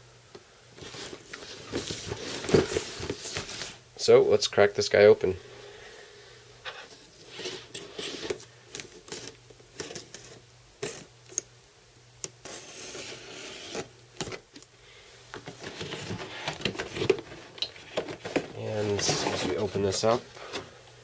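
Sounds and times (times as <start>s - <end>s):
cardboard sliding scrape: 12.4s - 13.9s, 18.1s - 20.7s
cardboard box handling: 15.4s - 20.7s.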